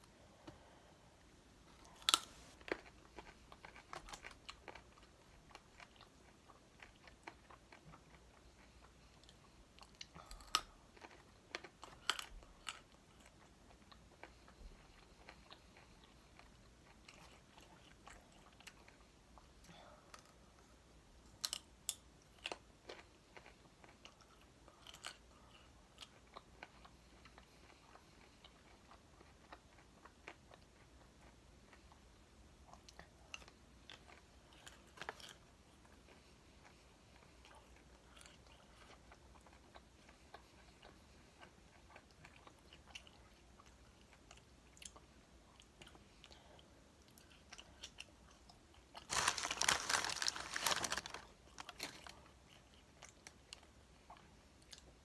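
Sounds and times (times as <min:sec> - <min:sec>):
person chewing crispy chicken: 0:01.9 - 0:19.0, 0:22.3 - 0:32.1, 0:32.7 - 0:36.2, 0:37.4 - 0:45.0, 0:45.6 - 0:54.9.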